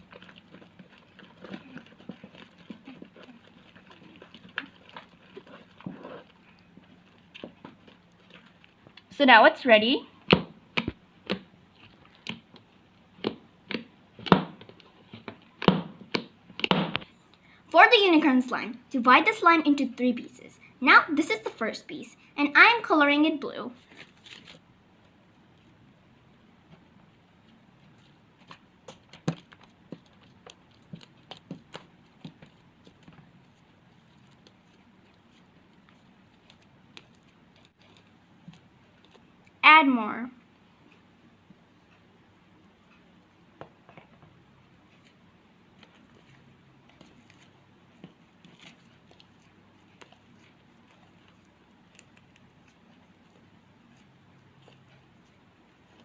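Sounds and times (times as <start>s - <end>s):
slime kneaded by hand: 0.0s - 9.4s, 10.2s - 17.1s, 26.7s - 39.8s, 44.9s - 56.0s.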